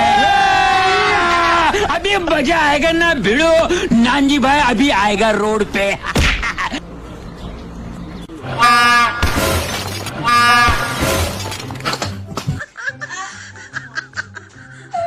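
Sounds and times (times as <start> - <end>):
train horn blasts: 10.2 - 11.3.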